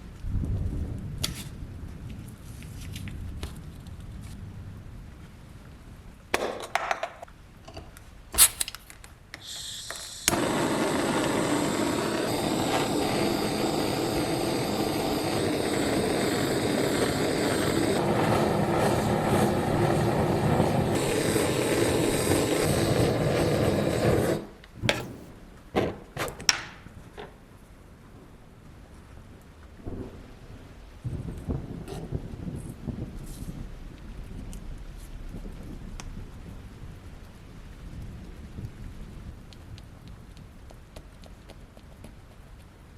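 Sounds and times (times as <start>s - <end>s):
power tool running: 9.4s - 25.3s.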